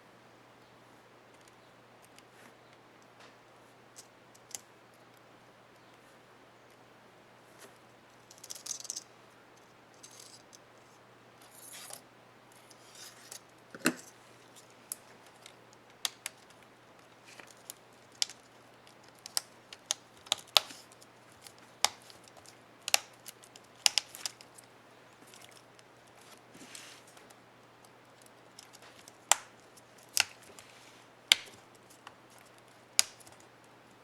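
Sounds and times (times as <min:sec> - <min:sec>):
soft scraping: 0:26.2 - 0:27.1.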